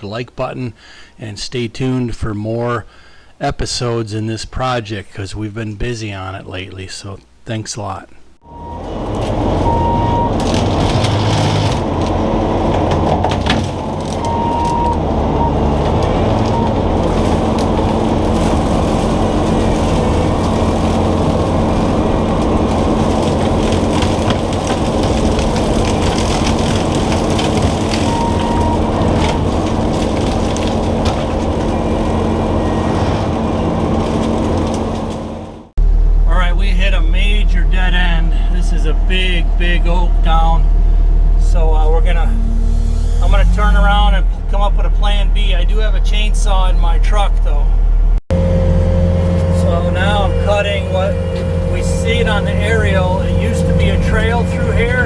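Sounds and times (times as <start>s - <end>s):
track loader running: 8.4s - 55.0s
wood cracking and snapping: 10.3s - 15.0s, 15.8s - 32.6s.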